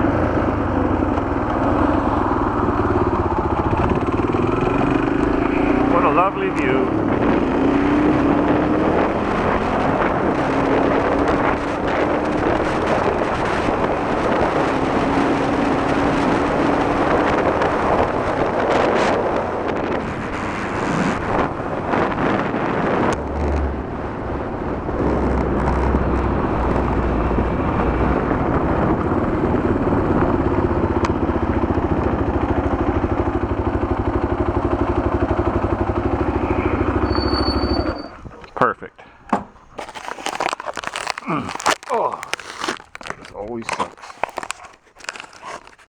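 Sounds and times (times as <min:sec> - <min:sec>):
motorcycle engine running: 0:00.0 - 0:38.6
wind noise on microphone: 0:06.7 - 0:38.6.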